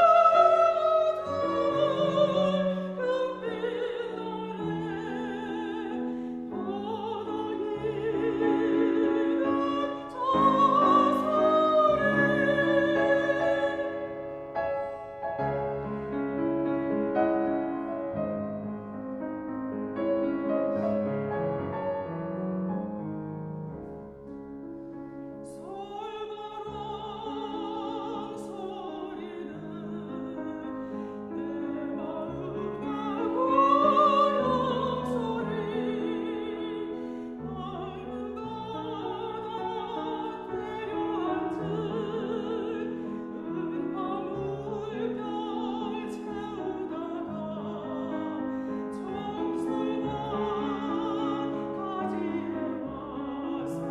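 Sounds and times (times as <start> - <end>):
woman singing with vibrato: 0.0 - 14.4, 25.5 - 30.7, 31.3 - 53.9
piano accompaniment: 0.0 - 53.9.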